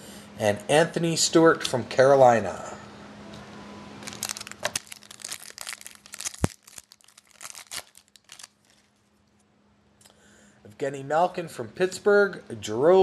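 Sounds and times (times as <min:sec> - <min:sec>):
foil wrapper crinkling: 0:04.0 - 0:09.1.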